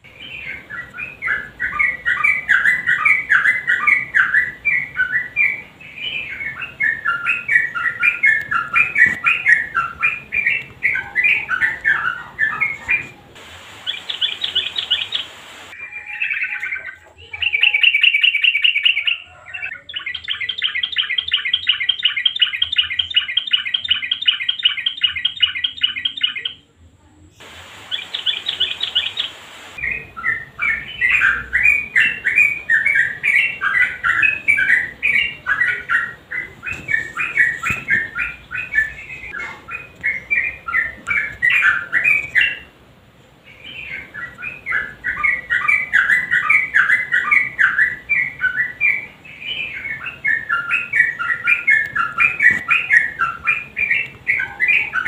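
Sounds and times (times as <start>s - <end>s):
bird rapid trill: 0.0s - 26.6s, 27.8s - 42.7s
bird chattering song: 0.0s - 26.7s, 27.3s - 42.8s, 43.4s - 55.0s.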